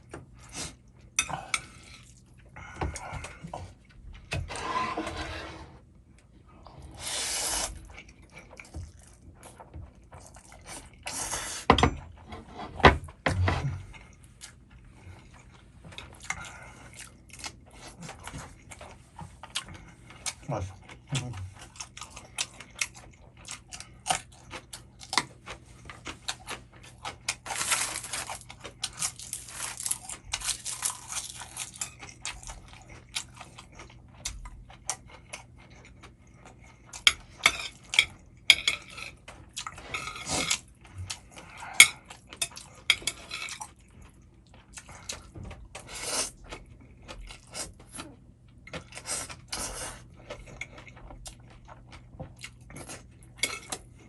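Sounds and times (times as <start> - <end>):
utensils scraping a dish: 4.4 - 5.8.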